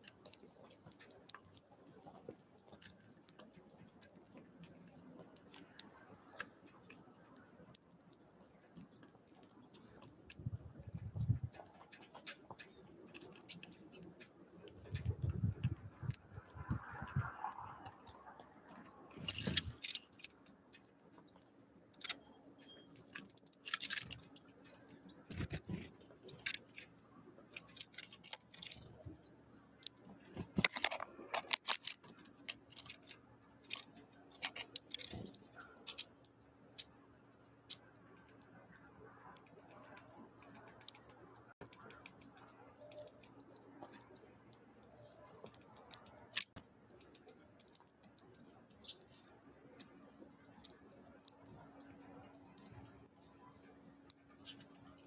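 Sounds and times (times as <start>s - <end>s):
birds pecking and landing: 0.0s - 37.0s, 37.7s - 55.0s
high bird chirps: 11.2s - 14.2s, 16.6s - 19.8s, 24.5s - 26.8s, 35.1s - 36.2s.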